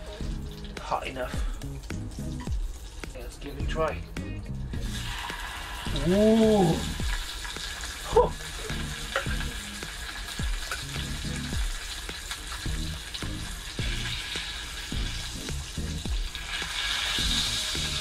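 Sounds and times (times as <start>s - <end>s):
fish frying in butter: 0.0s - 4.0s, 4.8s - 18.0s.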